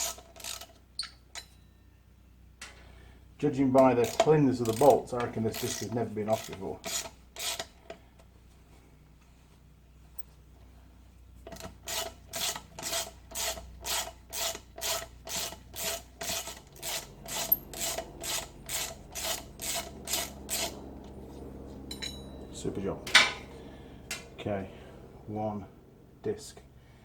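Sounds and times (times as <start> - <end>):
hand tool rasping on metal: 5.5 - 7.8, 11.9 - 20.7.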